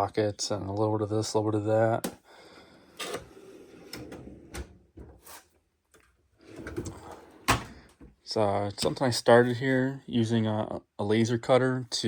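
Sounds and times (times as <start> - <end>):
metal drawers sliding: 6.4 - 7.9
drawers knocking and rattling: 6.5 - 7.9.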